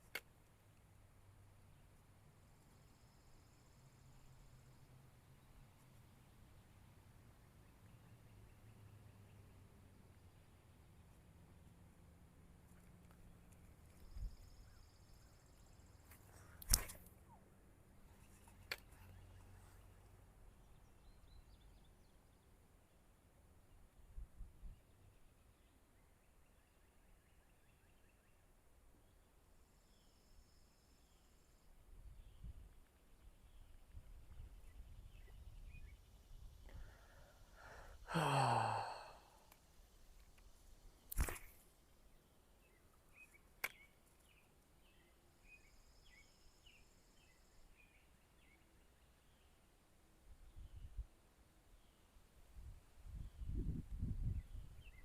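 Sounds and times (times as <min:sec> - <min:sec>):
person breathing in: 0:36.7 - 0:39.5
person sighing: 0:37.6 - 0:39.5.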